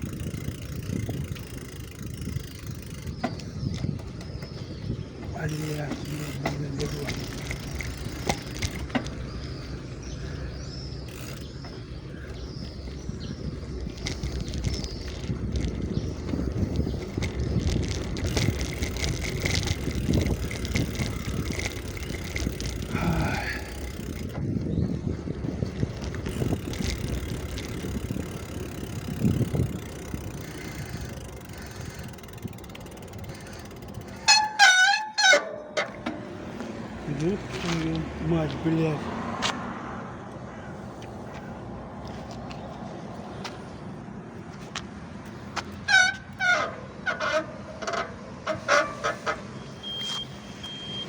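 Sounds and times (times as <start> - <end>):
bicycle brakes squeaking: 0.0 - 9.7, 10.9 - 24.9, 25.9 - 36.3, 45.6 - 51.0
bicycle wind and rolling noise: 0.0 - 51.0.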